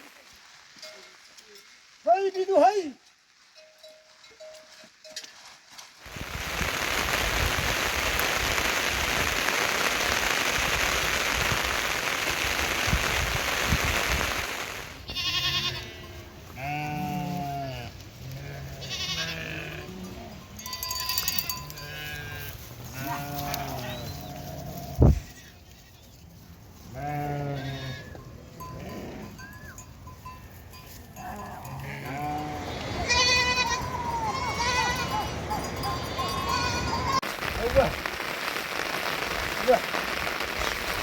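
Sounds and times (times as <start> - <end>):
heavy rain hissing: 6.0 - 15.1, 36.8 - 41.0
sheep bleating: 15.1 - 20.4, 21.1 - 25.6, 26.9 - 29.3, 31.2 - 37.2.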